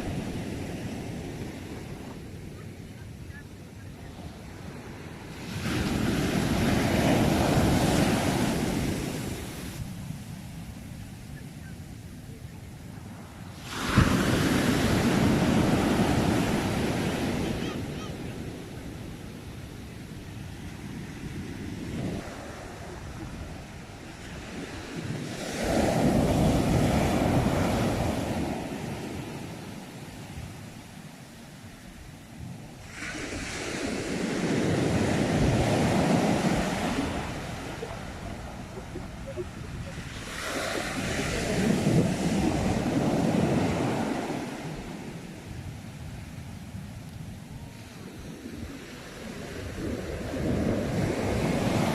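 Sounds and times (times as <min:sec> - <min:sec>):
sea waves washing on shore: 0:00.0 - 0:51.9
sea wave breaking: 0:32.8 - 0:44.8.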